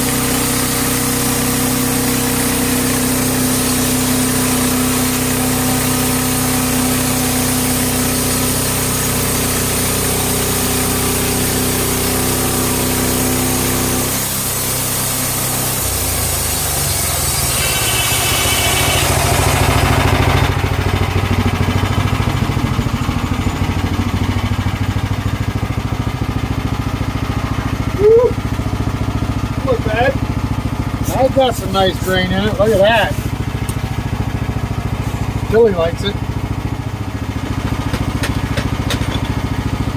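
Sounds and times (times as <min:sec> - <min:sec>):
band blade sawing log: 0:00.0 - 0:20.7, 0:30.9 - 0:36.3
gas engine running: 0:00.0 - 0:39.9
high hiss: 0:13.6 - 0:19.9.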